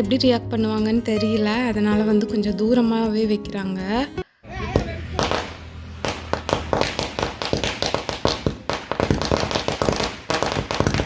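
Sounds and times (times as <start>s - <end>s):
firecrackers cracking: 4.7s - 11.0s.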